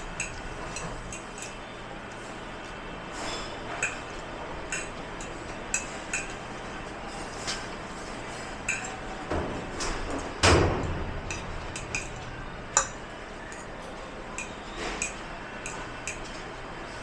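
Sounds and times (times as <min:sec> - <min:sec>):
dishes and cutlery clinking: 0:00.1 - 0:01.6, 0:03.1 - 0:16.5
dishes clattering: 0:03.2 - 0:06.4, 0:07.1 - 0:13.7, 0:14.3 - 0:16.4.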